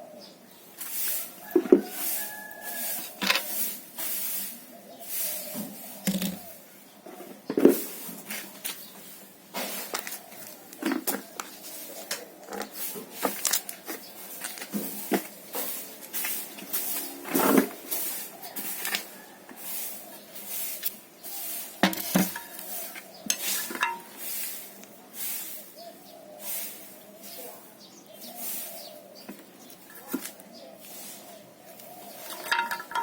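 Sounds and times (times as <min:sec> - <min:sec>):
rustling: 0:00.8 - 0:06.6, 0:07.2 - 0:25.7, 0:28.1 - 0:33.0
objects knocking and clicking: 0:06.0 - 0:06.5, 0:21.8 - 0:22.7, 0:23.3 - 0:24.1, 0:32.2 - 0:33.0.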